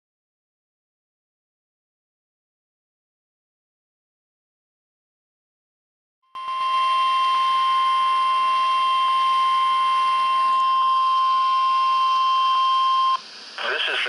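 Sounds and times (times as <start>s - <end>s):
steady warning alarm tone: 6.3s - 13.6s
radio hiss: 10.3s - 14.0s.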